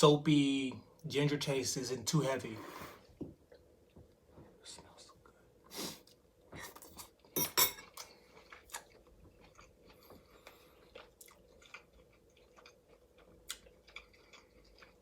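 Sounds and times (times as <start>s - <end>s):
person chewing food: 6.0s - 15.0s.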